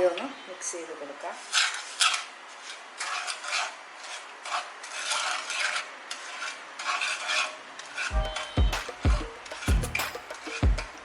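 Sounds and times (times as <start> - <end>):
utensil scraping a pan: 1.4 - 11.0
music with a deep beat: 8.1 - 11.0.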